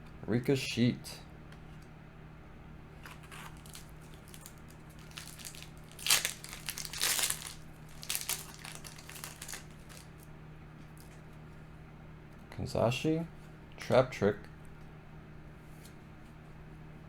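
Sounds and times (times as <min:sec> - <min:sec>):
faint low hum: 0:00.0 - 0:17.0
foil wrapper crinkling: 0:03.0 - 0:10.3.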